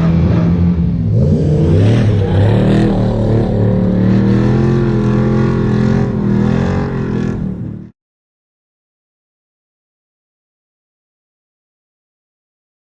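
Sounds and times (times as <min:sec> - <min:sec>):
off-road vehicle engine revving: 0:00.0 - 0:07.9.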